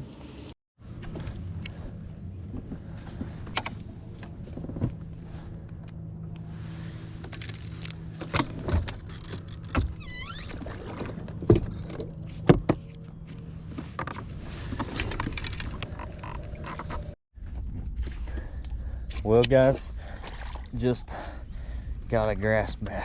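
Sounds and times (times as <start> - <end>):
knocks and clicks on boat: 8.2 - 13.1.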